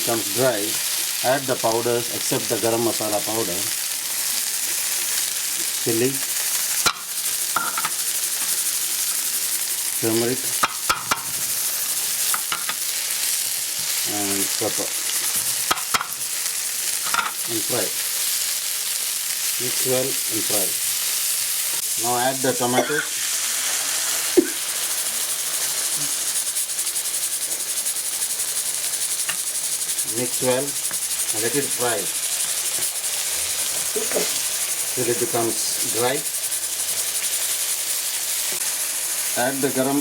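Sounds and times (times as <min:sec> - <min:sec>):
food sizzling in oil: 0:00.0 - 0:40.0
spoon knocking against pan: 0:06.8 - 0:08.0, 0:10.6 - 0:11.3, 0:12.3 - 0:12.8, 0:15.7 - 0:16.2.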